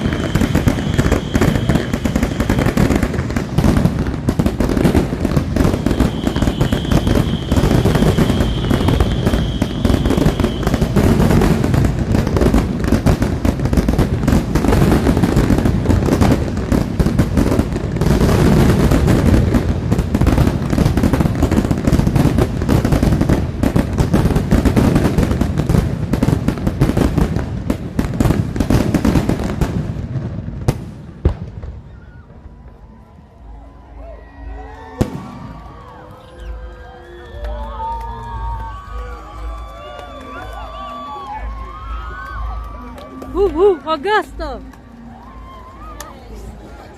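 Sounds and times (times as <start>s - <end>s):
fireworks bangs and crackling: 0.0s - 46.9s
high rising whistle: 5.9s - 11.0s, 33.8s - 42.4s.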